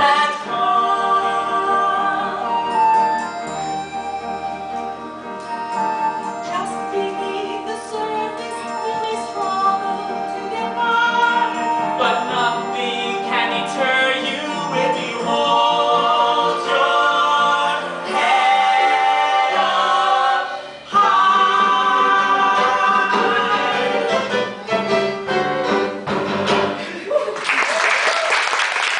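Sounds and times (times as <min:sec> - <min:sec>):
singers in harmony: 0:00.0 - 0:04.7, 0:05.8 - 0:24.7
instrumental accompaniment: 0:00.0 - 0:26.9
audience applause: 0:27.0 - 0:28.9.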